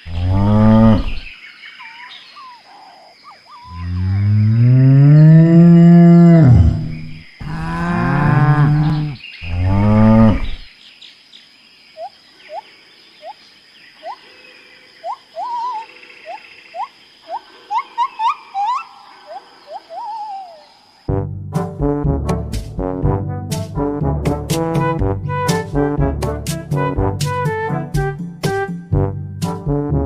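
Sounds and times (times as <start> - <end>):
cow mooing: 0.0 - 1.2, 3.8 - 10.6.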